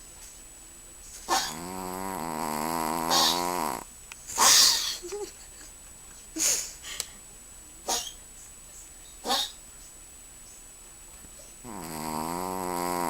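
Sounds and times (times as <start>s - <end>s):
dog snoring: 1.3s - 3.9s, 11.6s - 13.0s
dog snuffling through nose: 3.1s - 3.8s.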